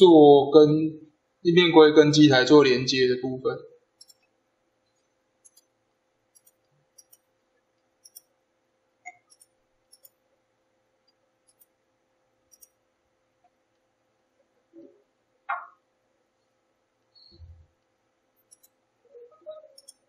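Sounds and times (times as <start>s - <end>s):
faint steady hum: 0.0s - 20.0s
computer mouse clicks: 4.0s - 4.3s, 5.4s - 5.7s, 6.3s - 8.3s, 9.0s - 10.2s, 11.1s - 11.8s, 12.5s - 12.8s, 17.0s - 18.8s, 19.5s - 20.0s.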